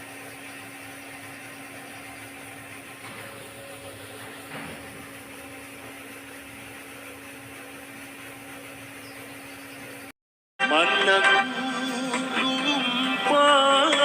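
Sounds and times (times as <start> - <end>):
cutting machine motor humming: 0.0 - 10.1.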